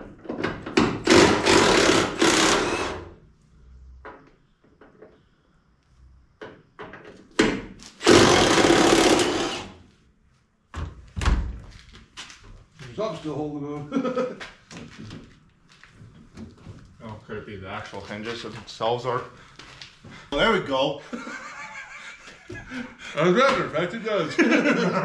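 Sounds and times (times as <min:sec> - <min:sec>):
power tool running: 0:01.0 - 0:03.1, 0:08.0 - 0:09.8.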